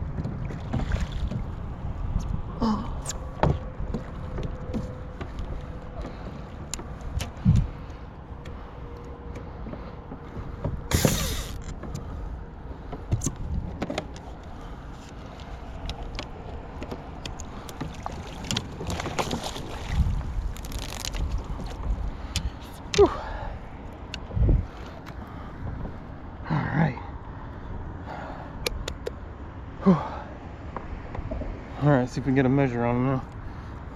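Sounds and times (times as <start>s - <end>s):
water sounds: 0.0s - 13.6s, 14.3s - 26.3s
splash: 0.5s - 1.4s, 17.9s - 21.2s.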